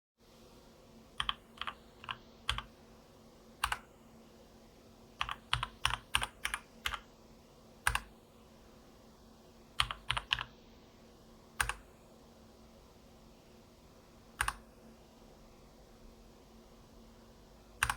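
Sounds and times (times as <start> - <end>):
mechanical keyboard clicking: 5.2 - 7.0, 7.9 - 8.1, 9.8 - 10.5, 14.4 - 14.6.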